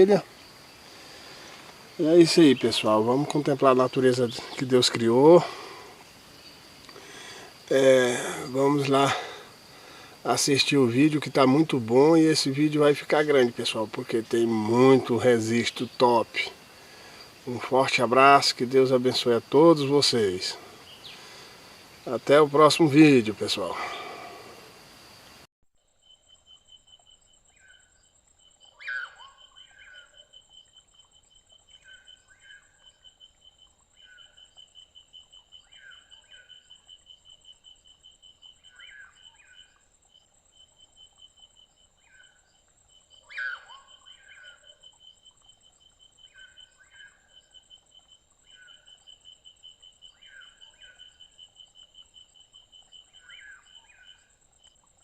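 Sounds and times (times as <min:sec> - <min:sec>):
insect high whine: 0:00.0 - 0:55.0
insect pulsing buzz: 0:00.0 - 0:55.0
animal paired calls: 0:43.2 - 0:44.9.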